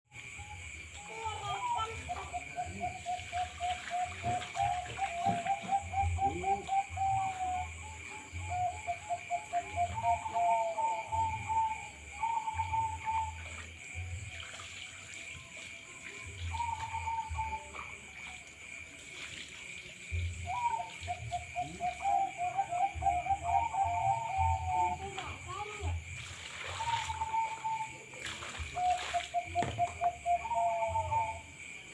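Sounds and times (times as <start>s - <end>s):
doves cooing: 1.0s - 13.8s, 16.6s - 18.2s, 20.4s - 25.4s, 26.7s - 31.6s.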